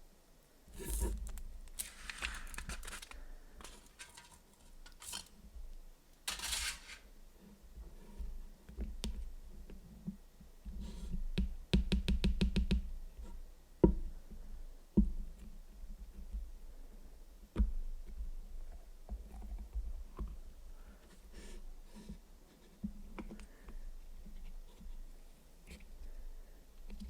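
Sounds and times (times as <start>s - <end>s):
wrapping rustle: 0.7s - 5.3s, 6.3s - 7.1s.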